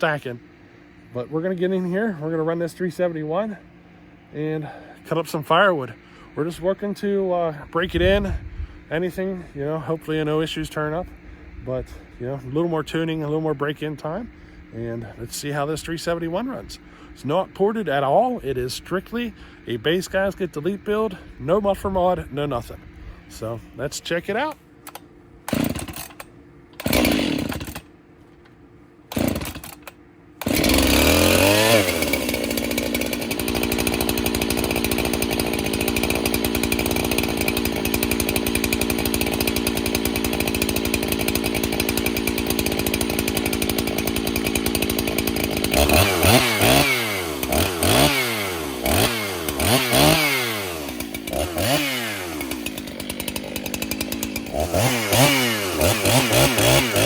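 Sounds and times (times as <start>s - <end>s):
chainsaw engine revving: 24.3s - 27.9s, 29.1s - 57.0s
chainsaw starter pulls: 24.3s - 28.5s, 29.1s - 57.0s.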